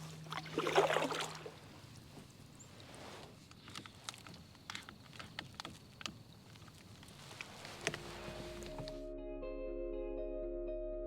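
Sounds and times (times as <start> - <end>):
paddle splashing through water: 0.0 - 3.4, 6.4 - 9.0
small clicks: 3.4 - 8.0.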